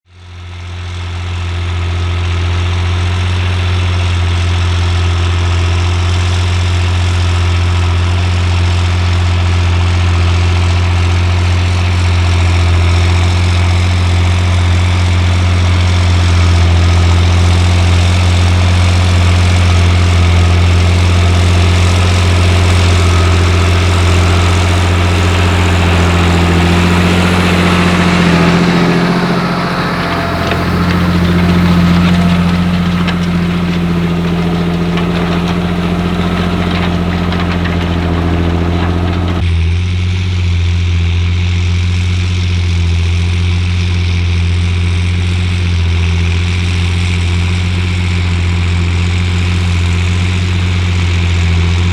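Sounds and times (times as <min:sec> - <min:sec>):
tractor diesel engine droning: 0:10.7 - 0:39.4.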